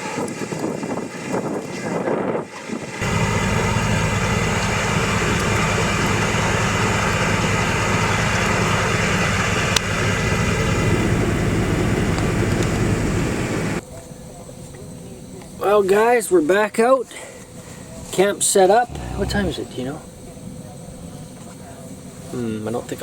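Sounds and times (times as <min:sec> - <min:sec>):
moving vehicle hum and hiss: 0:00.0 - 0:13.8.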